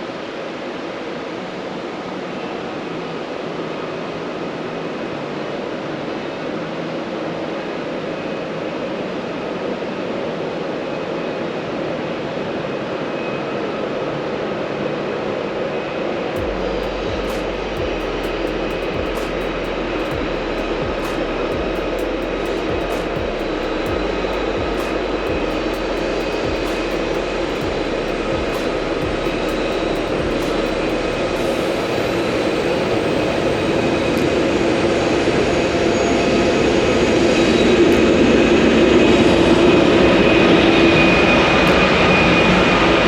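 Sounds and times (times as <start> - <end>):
vehicle engine and road noise: 16.4 - 33.6.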